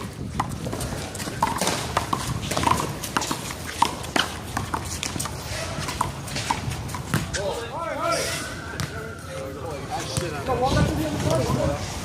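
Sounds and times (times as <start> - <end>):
ball bouncing on pavement: 0.0 - 7.6, 8.7 - 9.1, 10.0 - 11.5.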